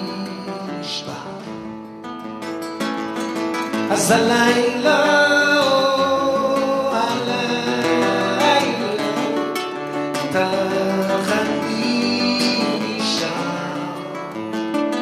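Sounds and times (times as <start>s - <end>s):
person singing: 0.0s - 1.9s, 3.7s - 15.0s
acoustic guitar strumming: 0.0s - 15.0s.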